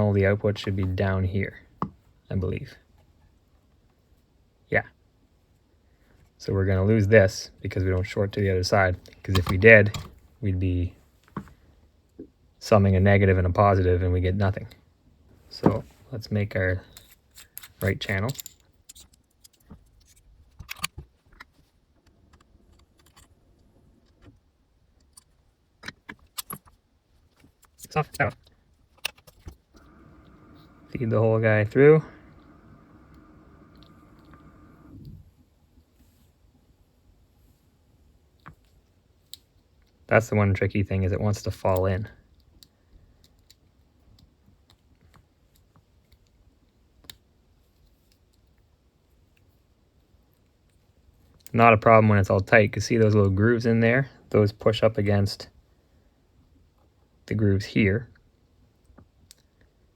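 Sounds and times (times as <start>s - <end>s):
connector parts clicking: 9.0s - 10.2s, 16.9s - 21.5s, 25.0s - 26.8s, 27.4s - 30.4s
small metal parts clicking and rattling: 16.8s - 21.6s, 22.3s - 23.4s.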